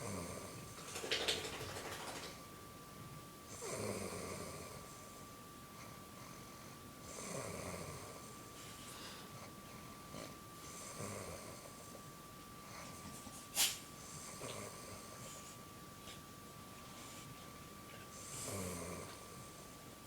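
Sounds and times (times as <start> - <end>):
faint high whine: 0.0 - 20.0.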